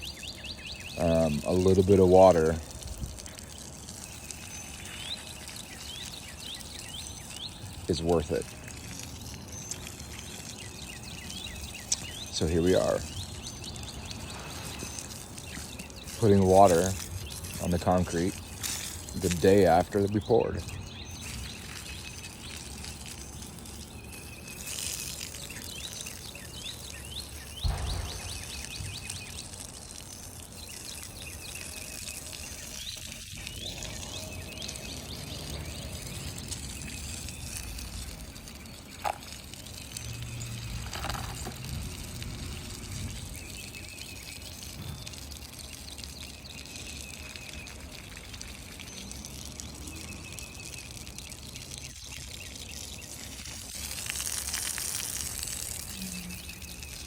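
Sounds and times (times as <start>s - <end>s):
water trickling onto concrete: 0.0s - 57.0s.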